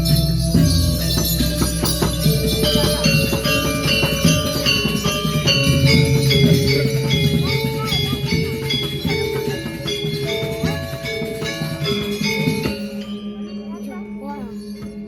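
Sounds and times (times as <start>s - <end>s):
gamelan playing: 0.0s - 15.0s.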